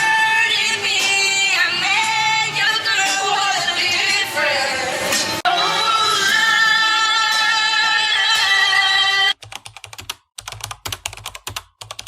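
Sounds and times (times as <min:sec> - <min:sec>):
song with held sung notes: 0:00.0 - 0:09.4.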